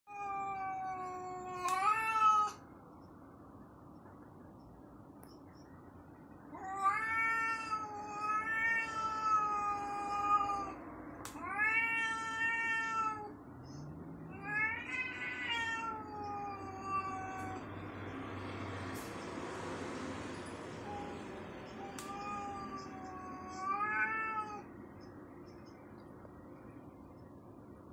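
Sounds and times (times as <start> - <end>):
cat yowling: 6.6 - 10.8, 11.4 - 13.4, 14.3 - 17.6, 21.8 - 24.7.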